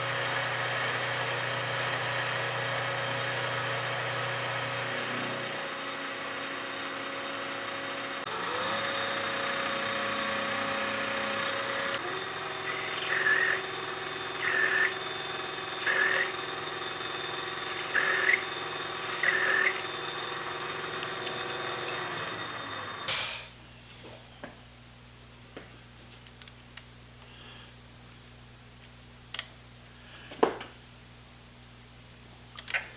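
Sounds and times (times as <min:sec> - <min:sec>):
air compressor running: 0:00.0 - 0:24.1.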